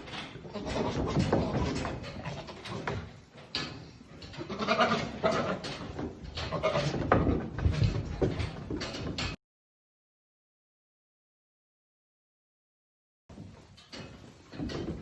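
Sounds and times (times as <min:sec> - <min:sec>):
goat bleating: 0:00.0 - 0:03.1, 0:04.4 - 0:05.6, 0:06.4 - 0:07.2.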